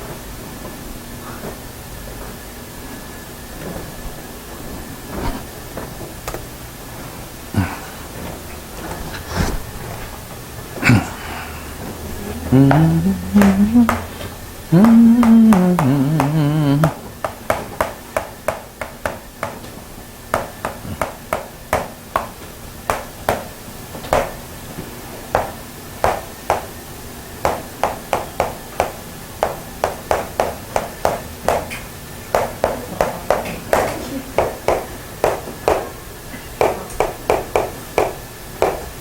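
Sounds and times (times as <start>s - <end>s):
wavering hum of voice: 10.8s - 17.1s
pen tapping writing strokes: 14.8s - 19.7s, 36.6s - 38.8s.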